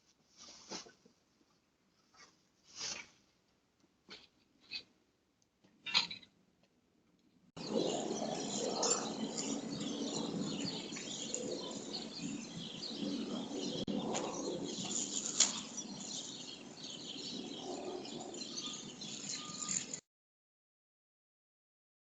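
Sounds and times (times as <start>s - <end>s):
outdoor background noise: 0.0s - 20.0s
birds chirping: 7.6s - 20.0s.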